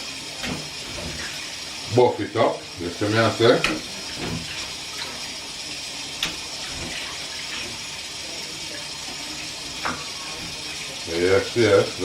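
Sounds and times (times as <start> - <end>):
tap running into sink: 0.3 - 1.6, 3.0 - 5.3, 6.2 - 7.9, 9.0 - 10.9.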